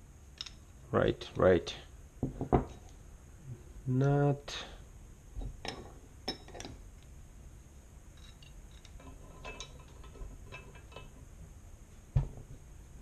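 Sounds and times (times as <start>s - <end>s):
small metal hardware clinking: 5.6s - 6.8s, 8.1s - 11.2s.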